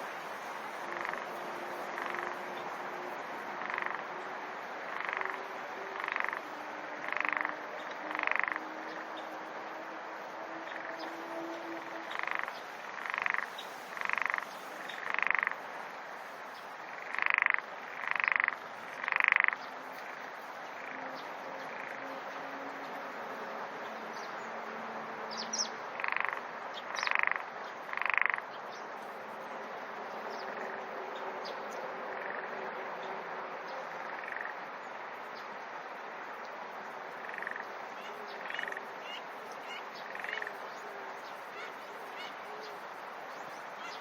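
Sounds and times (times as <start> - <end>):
frog chorus: 0.0 - 44.0
frog croaking loudly: 0.8 - 9.2, 10.6 - 15.6, 16.8 - 20.2, 25.6 - 28.5, 32.1 - 32.8, 33.9 - 34.7, 37.1 - 40.6.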